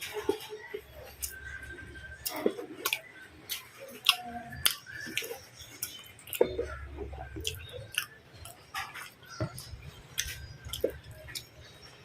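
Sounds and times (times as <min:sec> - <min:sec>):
person chewing with wet mouth clicks: 0:02.2 - 0:11.5.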